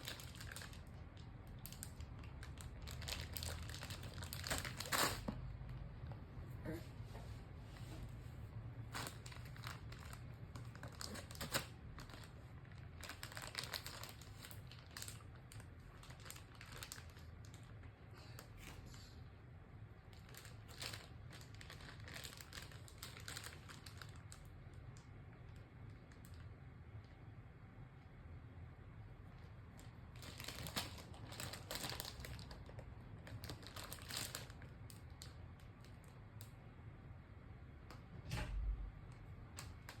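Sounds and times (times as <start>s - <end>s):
plastic packet crinkling and clicking: 0.0s - 6.2s, 8.9s - 17.9s, 20.1s - 26.5s, 29.8s - 36.6s, 39.1s - 40.0s.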